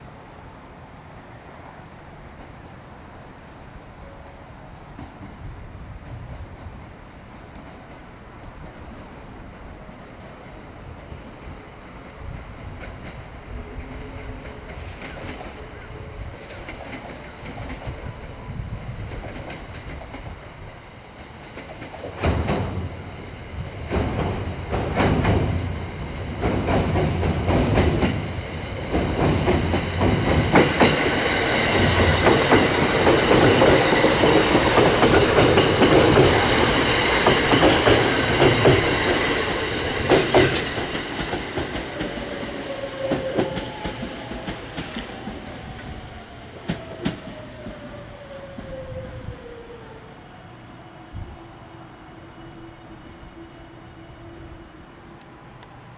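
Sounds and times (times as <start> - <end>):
train wheels clattering over rail joints: 19.0 - 48.8
train motor whine: 21.7 - 55.8.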